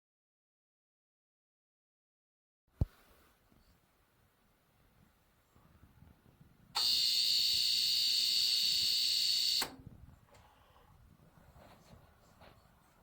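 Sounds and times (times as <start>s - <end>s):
piercing electronic alarm beep: 6.8s - 9.7s.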